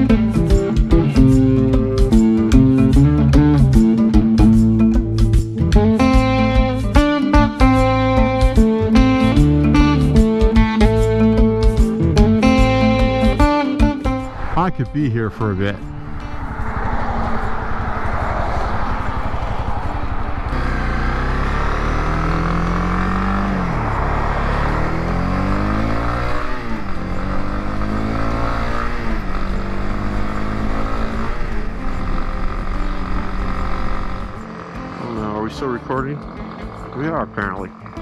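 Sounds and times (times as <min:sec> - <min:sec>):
motorcycle engine accelerating: 0:00.0 - 0:14.7, 0:15.5 - 0:38.0
wind rushing past microphone: 0:14.1 - 0:21.4.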